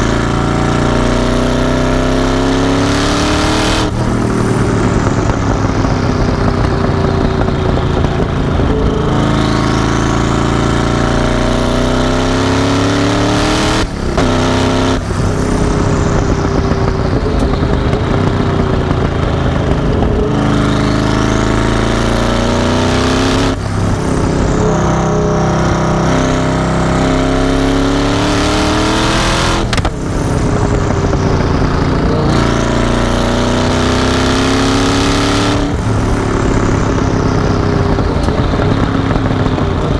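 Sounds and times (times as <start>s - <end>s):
car engine revving hard: 0.0s - 39.9s.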